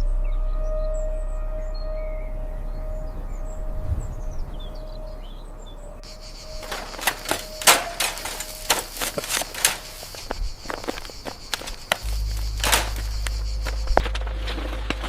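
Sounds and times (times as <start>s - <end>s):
faint bird chirps: 0.0s - 15.0s
sharp clicks and knocks: 6.5s - 14.2s.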